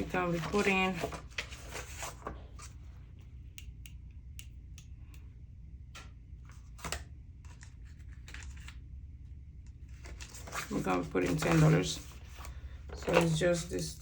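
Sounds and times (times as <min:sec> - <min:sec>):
paper bills rustling: 0:00.0 - 0:02.8, 0:09.8 - 0:13.8
low steady hum: 0:00.0 - 0:14.0.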